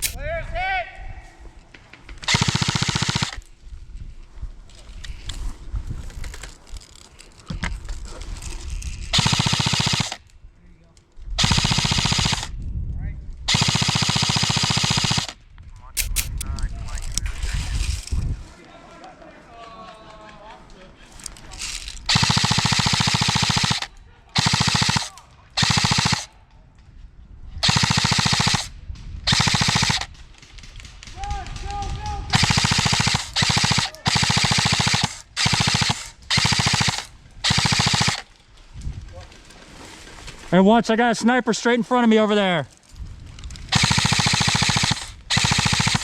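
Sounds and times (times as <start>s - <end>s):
airsoft gun firing bursts: 2.2s - 3.4s, 9.2s - 10.2s, 11.4s - 12.5s, 13.5s - 15.4s, 16.0s - 16.4s, 21.6s - 26.3s, 27.6s - 31.2s, 32.3s - 38.3s, 43.7s - 46.0s
faint scattered shots: 2.2s - 3.5s, 9.2s - 10.2s, 11.4s - 12.5s, 13.5s - 15.4s, 21.6s - 26.4s, 27.6s - 38.4s, 43.7s - 46.0s.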